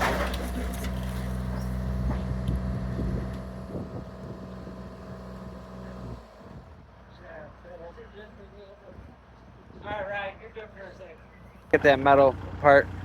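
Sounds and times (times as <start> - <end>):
debris crunching and knocking: 0.0 - 4.4
diesel engine running: 0.0 - 7.2, 11.4 - 13.0.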